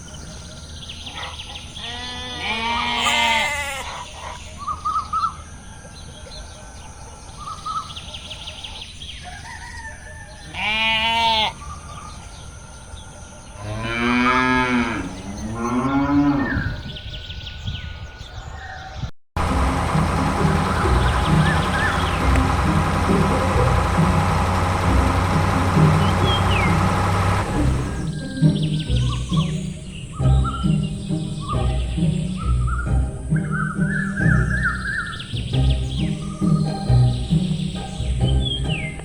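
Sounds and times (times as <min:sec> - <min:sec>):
cows mooing: 0:13.6 - 0:16.6.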